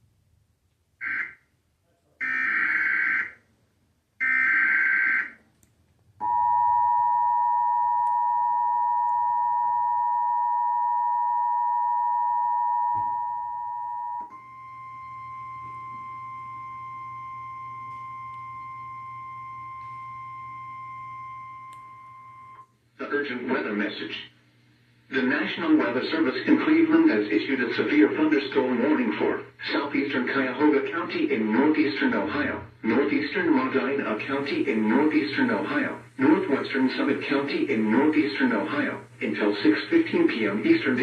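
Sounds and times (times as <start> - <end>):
single steady alarm tone: 1.0 - 1.4, 2.2 - 3.4, 4.2 - 5.4, 6.2 - 22.7
two-tone attention signal: 6.2 - 22.6
buzzy data bursts: 33.1 - 41.0.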